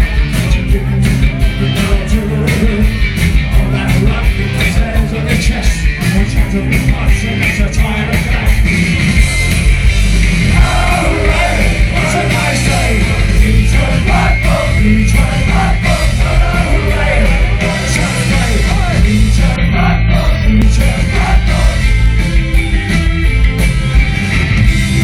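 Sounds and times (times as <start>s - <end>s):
rock band playing live: 0.0s - 25.0s
lead vocal singing: 0.3s - 8.6s, 10.5s - 22.1s.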